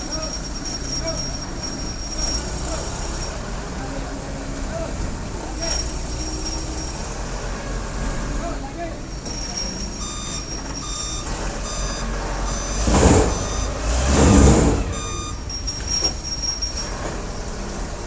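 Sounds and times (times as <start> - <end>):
reversing alarm beeping: 0.0 - 4.0, 5.4 - 8.4, 9.0 - 18.0
engine running: 0.0 - 18.0
loud rushing noises: 12.2 - 18.0.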